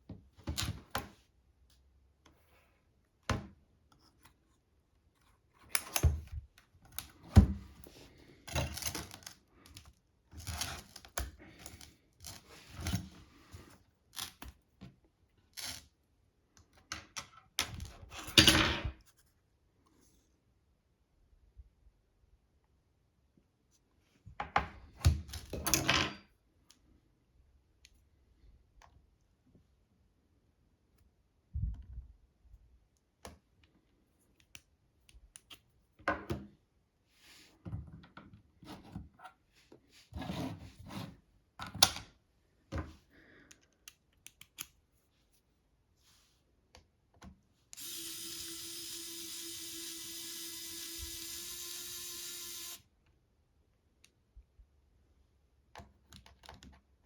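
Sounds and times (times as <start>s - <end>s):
small tools clicking and scraping: 8.4s - 13.1s, 15.5s - 15.9s
small power tool motor running: 47.8s - 52.8s.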